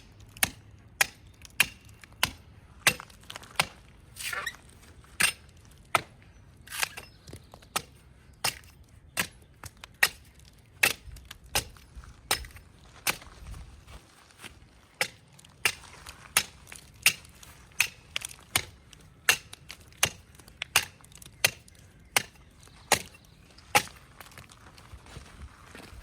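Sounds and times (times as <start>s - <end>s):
axe chopping tree trunk: 0.0s - 4.4s, 5.2s - 13.3s, 14.9s - 24.0s.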